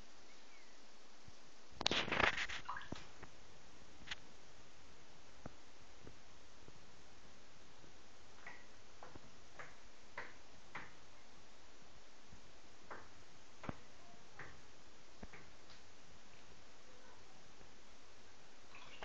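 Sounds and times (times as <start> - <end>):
water dripping: 1.8 - 3.3, 18.6 - 19.0.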